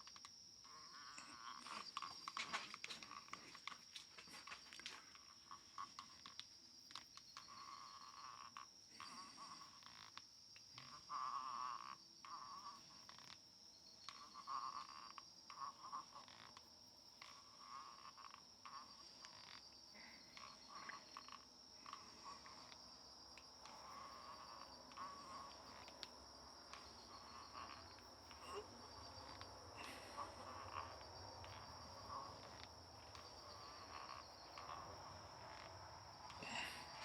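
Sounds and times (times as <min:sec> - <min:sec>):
crickets chirping: 0:00.0 - 0:37.0
faint clicks: 0:12.2 - 0:37.0.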